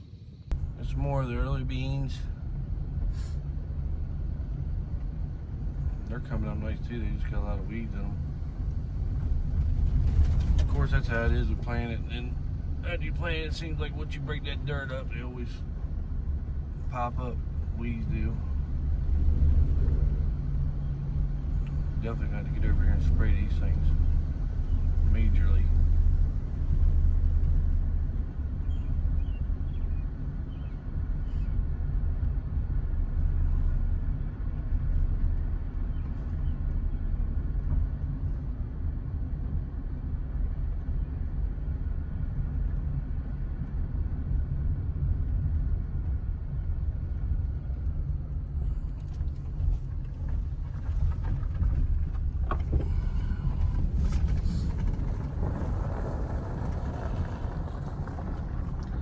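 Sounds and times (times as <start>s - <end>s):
low engine rumble: 0.0s - 59.0s.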